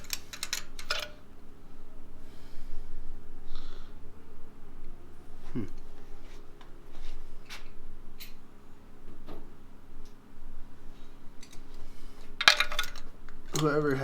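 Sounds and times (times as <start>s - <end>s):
metal parts and tools clicking: 0.0s - 1.2s, 12.4s - 14.0s
steady low hum: 0.0s - 14.0s.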